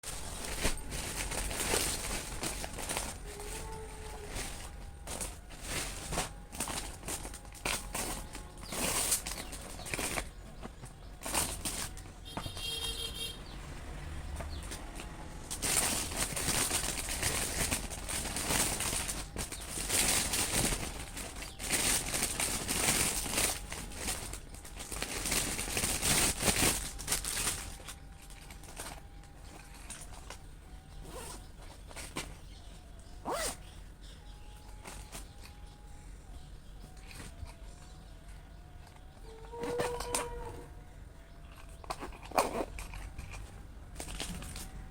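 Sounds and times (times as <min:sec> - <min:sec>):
plastic packaging crinkling: 0:00.0 - 0:13.3, 0:15.0 - 0:33.6, 0:41.4 - 0:44.9.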